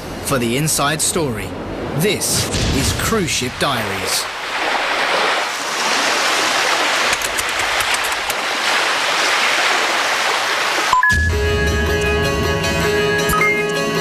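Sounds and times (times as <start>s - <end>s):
water rushing: 0.5s - 13.6s
plucked string music: 11.1s - 14.0s.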